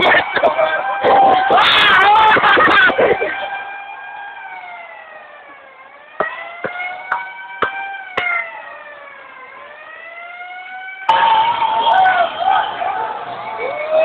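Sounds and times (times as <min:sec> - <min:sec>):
siren wailing: 0:00.0 - 0:14.0
sharp knocks: 0:06.2 - 0:08.4.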